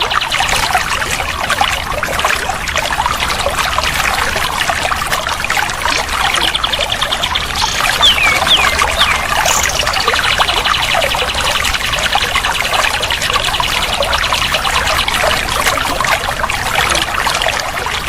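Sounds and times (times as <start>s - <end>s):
water trickling and splashing: 0.0s - 18.0s
bird whistled notes: 7.5s - 10.2s
bird rattling trill: 7.6s - 10.2s.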